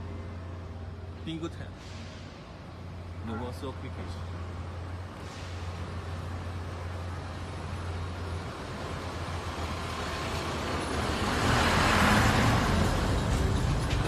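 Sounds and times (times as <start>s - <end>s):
skid steer loader engine: 5.0s - 14.0s.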